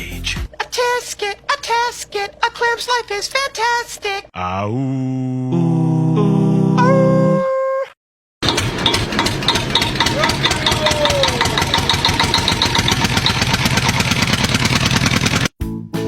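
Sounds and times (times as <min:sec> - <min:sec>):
engine running: 0:08.4 - 0:15.5.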